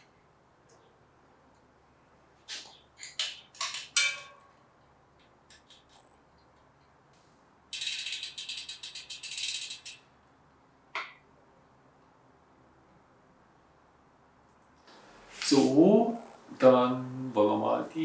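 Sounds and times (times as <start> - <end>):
bicycle freewheel ratcheting: 7.7 - 10.1.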